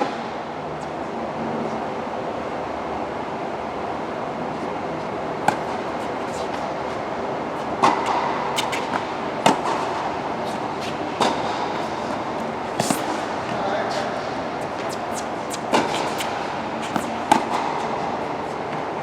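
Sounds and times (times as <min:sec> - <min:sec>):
steady background hiss: 0:00.0 - 0:19.0
sharp ball-strike clicks: 0:07.6 - 0:09.8.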